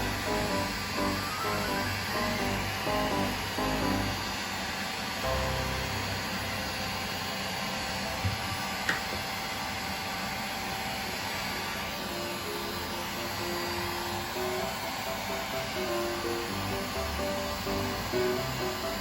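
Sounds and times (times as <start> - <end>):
hair dryer blowing: 0.0 - 19.0.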